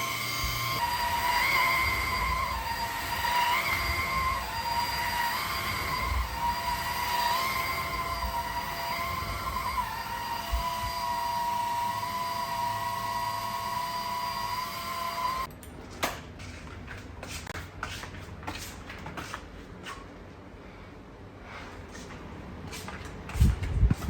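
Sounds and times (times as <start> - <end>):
vacuum cleaner motor whining: 0.0 - 15.5.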